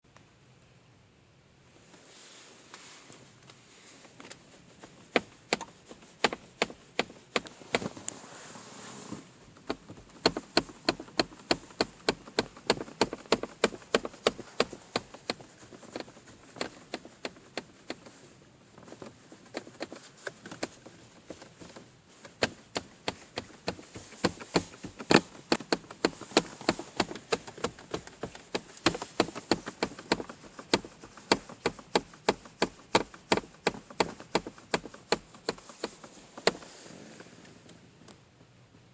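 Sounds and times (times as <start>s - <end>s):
low steady hum: 0.1s - 38.9s
dashboard knocking and rattling: 9.6s - 18.0s, 19.0s - 36.6s.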